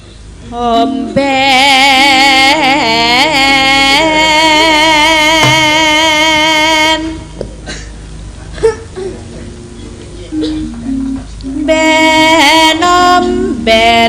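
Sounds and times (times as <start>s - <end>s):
person singing: 10.4s - 14.0s.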